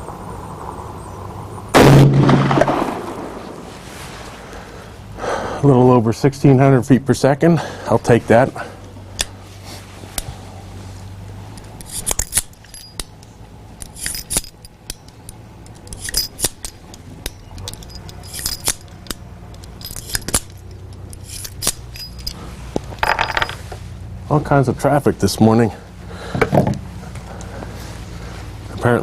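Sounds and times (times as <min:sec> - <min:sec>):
low steady hum: 0:00.0 - 0:29.0
revolver metallic clicks: 0:11.6 - 0:23.6.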